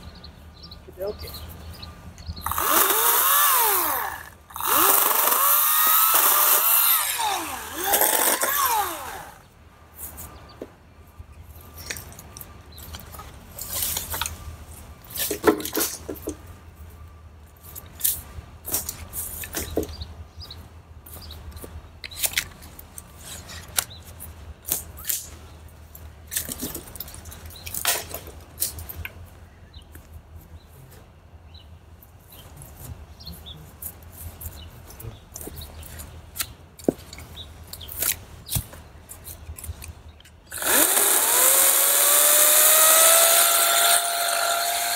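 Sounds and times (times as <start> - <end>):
dry branches snapping and rustling: 21.6 - 25.4, 35.3 - 40.8.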